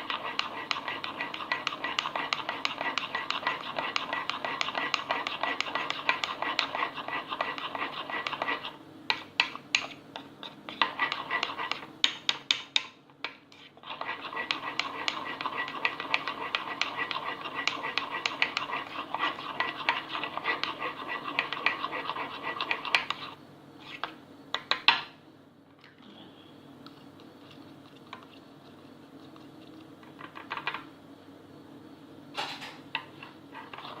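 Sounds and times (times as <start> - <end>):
spoon stirring batter in mug: 0.0 - 23.4, 33.0 - 34.0.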